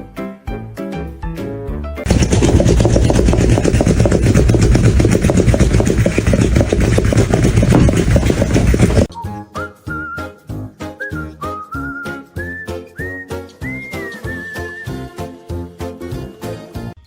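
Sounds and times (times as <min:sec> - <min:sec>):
music: 0:00.0 - 0:02.1, 0:09.1 - 0:17.0
loud rough motor noise: 0:02.1 - 0:09.1.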